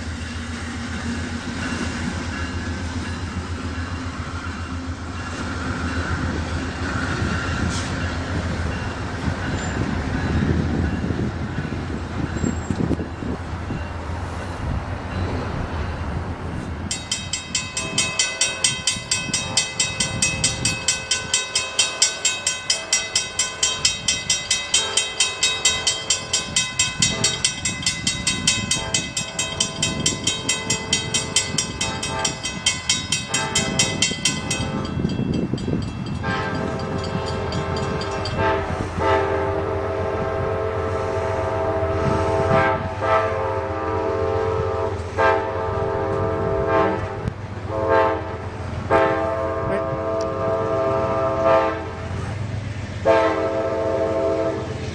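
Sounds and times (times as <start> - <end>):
passenger train rumbling: 0.0 - 54.9
crossing signal bell ringing: 16.9 - 38.9.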